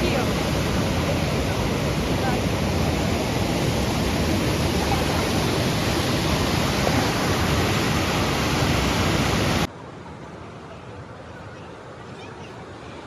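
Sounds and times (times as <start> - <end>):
waterfall rushing: 0.0 - 9.7.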